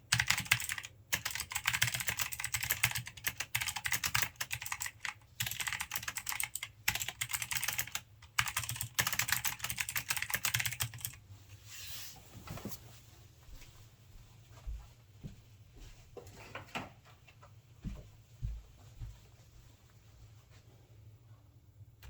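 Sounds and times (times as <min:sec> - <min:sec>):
mechanical keyboard typing: 0:00.0 - 0:11.2.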